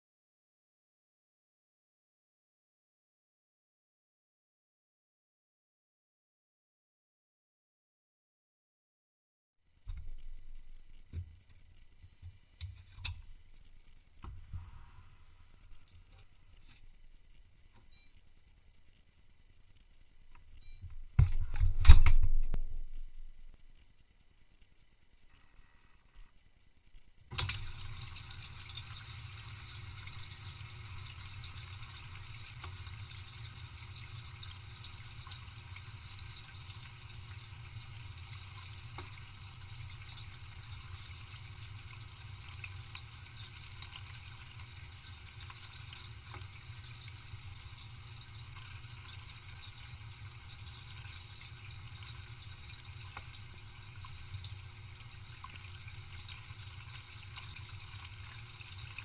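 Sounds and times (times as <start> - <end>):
low pump motor hum: 9.7 - 59.0
water rushing in dishwasher: 27.3 - 59.0.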